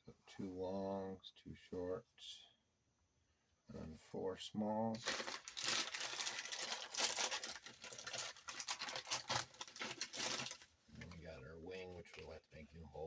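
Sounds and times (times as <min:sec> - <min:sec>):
plastic packaging crinkling: 0:05.0 - 0:10.8.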